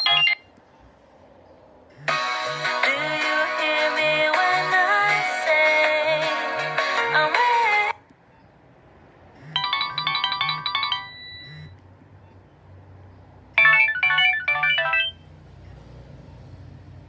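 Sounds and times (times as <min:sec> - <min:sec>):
electronic phone ringtone: 0:00.0 - 0:00.4, 0:09.4 - 0:11.8, 0:13.6 - 0:15.2.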